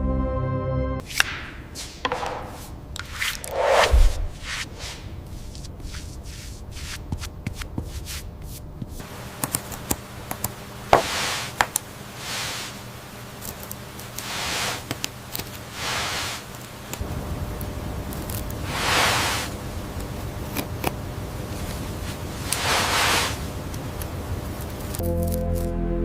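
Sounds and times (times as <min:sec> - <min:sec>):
soft swishing strokes: 0:01.8 - 0:07.3, 0:14.2 - 0:14.8, 0:22.0 - 0:23.5.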